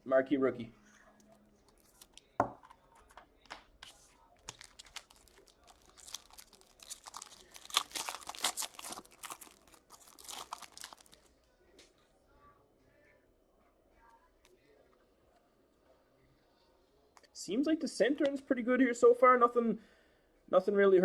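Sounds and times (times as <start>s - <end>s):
foil wrapper tearing and crinkling: 4.4s - 11.3s.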